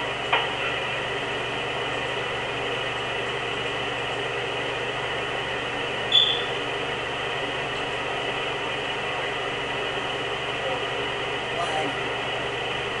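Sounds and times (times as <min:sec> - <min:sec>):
high-pitched squeak: 0:06.1 - 0:06.5.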